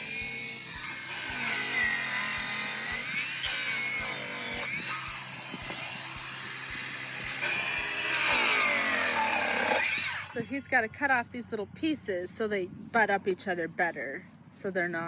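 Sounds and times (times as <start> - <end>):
chainsaw cutting boards: 0.0 - 10.4
chainsaw engine revving: 0.0 - 10.4.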